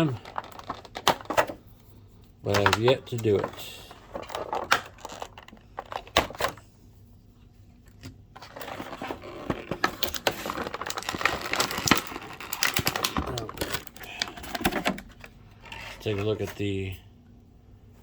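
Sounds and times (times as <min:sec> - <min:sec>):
plastic packaging crinkling: 0:00.0 - 0:01.4, 0:02.5 - 0:06.4, 0:08.4 - 0:16.1.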